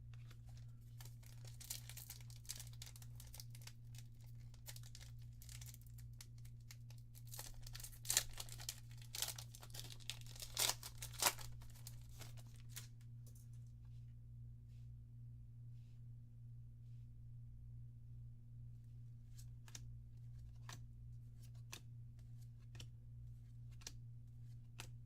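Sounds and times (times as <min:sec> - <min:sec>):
steady low hum: 0:00.0 - 0:25.0
wrappers crinkling and tearing: 0:00.2 - 0:12.9
cards being handled: 0:04.3 - 0:13.0, 0:19.3 - 0:25.0.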